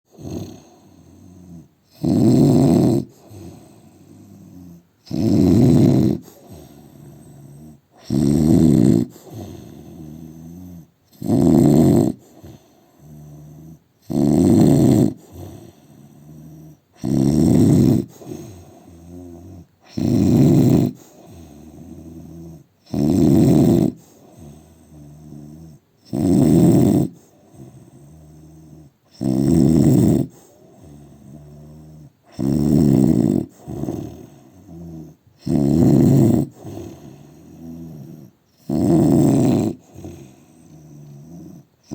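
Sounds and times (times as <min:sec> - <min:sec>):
man snoring loudly: 0:00.1 - 0:41.9
quiet breathing: 0:00.2 - 0:02.0, 0:03.0 - 0:05.1, 0:06.1 - 0:08.1, 0:09.0 - 0:11.2, 0:12.1 - 0:14.1, 0:15.1 - 0:17.0, 0:18.0 - 0:20.0, 0:20.9 - 0:22.9, 0:23.8 - 0:26.1, 0:27.0 - 0:29.2, 0:30.2 - 0:41.9.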